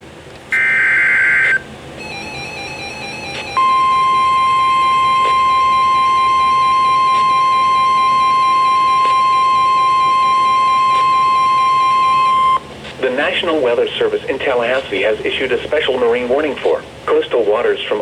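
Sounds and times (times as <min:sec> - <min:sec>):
steady high-pitched alarm tone: 0:00.5 - 0:12.6.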